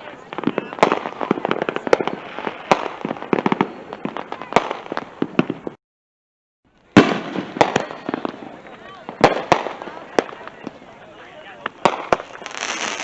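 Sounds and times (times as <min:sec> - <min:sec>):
fireworks crackling pops: 0:00.0 - 0:05.8, 0:06.7 - 0:13.0
loud firework bang: 0:06.9 - 0:08.4.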